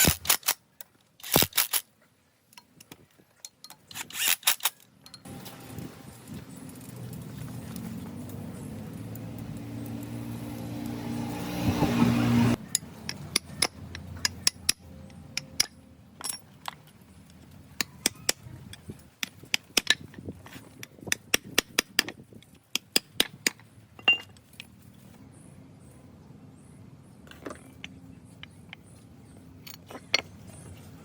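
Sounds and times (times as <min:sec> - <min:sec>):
sharp metallic clicks and clinks: 0:00.0 - 0:01.9, 0:02.5 - 0:05.3, 0:12.6 - 0:20.2.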